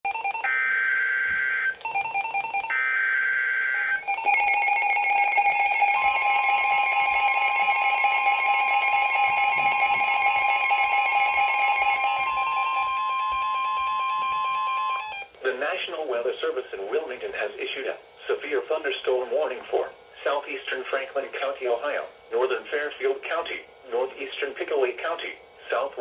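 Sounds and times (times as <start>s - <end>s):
pulsing electronic alarm beeping: 0.1s - 15.3s
steady warning alarm tone: 0.1s - 26.0s
raspy digital data bursts: 1.9s - 15.0s.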